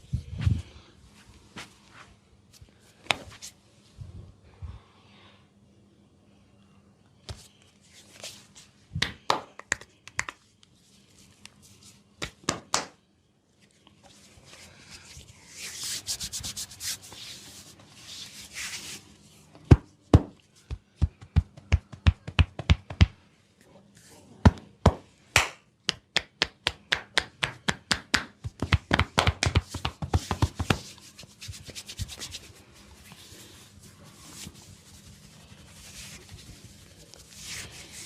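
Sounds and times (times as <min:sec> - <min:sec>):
hands slapping and chopping skin: 0:12.2 - 0:13.0, 0:24.5 - 0:30.8
hands rubbing oiled skin: 0:14.2 - 0:19.1, 0:28.4 - 0:38.0.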